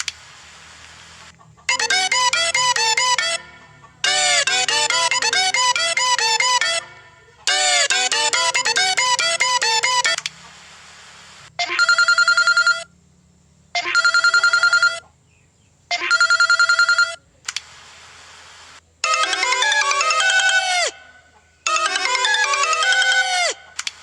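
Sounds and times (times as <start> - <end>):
electronic trilling phone ring: 1.7 - 10.2, 11.6 - 12.9, 13.8 - 15.0, 15.9 - 17.2, 19.0 - 23.8
melodic phone ringtone: 1.7 - 10.2, 11.6 - 12.9, 13.8 - 15.0, 15.9 - 17.2, 19.0 - 23.8.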